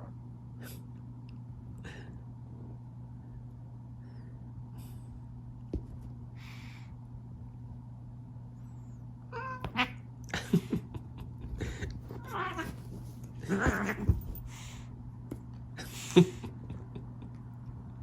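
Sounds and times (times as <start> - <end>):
soft thumps: 5.7 - 6.2, 11.4 - 15.5
kitten crying: 9.3 - 10.0, 12.1 - 12.8
kittens scuffling: 9.4 - 17.3.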